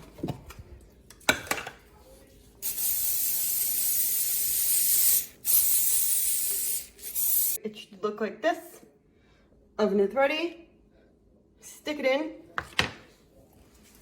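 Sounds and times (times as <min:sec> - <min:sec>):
aerosol spray hissing: 0:02.6 - 0:07.6.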